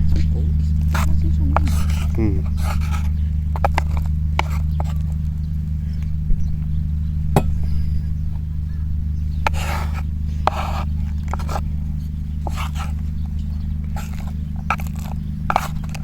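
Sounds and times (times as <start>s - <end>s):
utensil scraping cooking pot: 0.0s - 5.3s, 9.1s - 16.0s
steady low hum: 0.0s - 16.0s.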